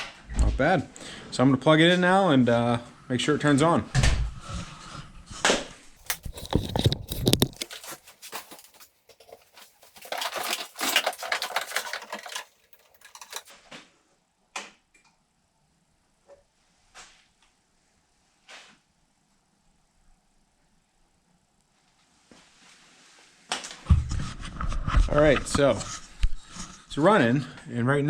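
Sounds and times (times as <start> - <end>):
crinkly rustle: 6.0 - 13.5
handling knocks and clicks: 6.0 - 13.5.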